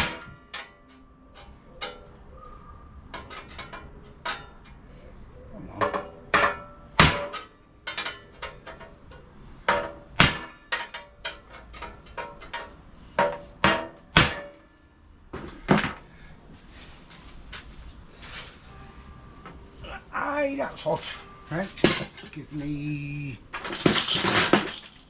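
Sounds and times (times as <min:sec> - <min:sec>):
hammer striking sheet metal: 0:00.0 - 0:02.1, 0:06.4 - 0:08.9, 0:09.7 - 0:14.7.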